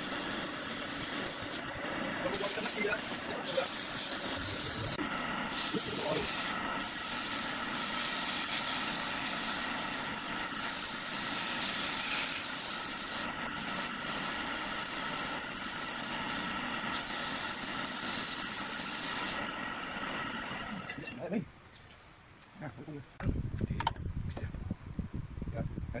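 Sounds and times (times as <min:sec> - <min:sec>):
machine hissing and whining: 0:00.0 - 0:21.1.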